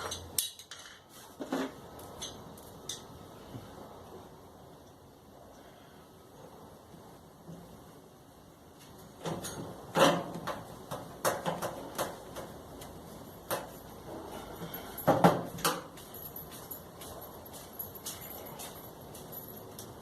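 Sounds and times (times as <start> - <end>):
knocks and clunks of dryer panels: 9.2 - 12.8, 15.1 - 15.9.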